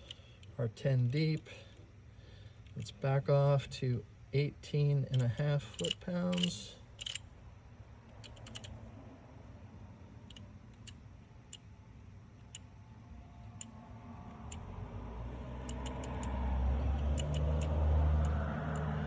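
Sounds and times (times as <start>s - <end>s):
torque wrench clicks: 5.2s - 7.3s, 8.2s - 8.7s, 15.6s - 16.4s, 17.0s - 18.9s.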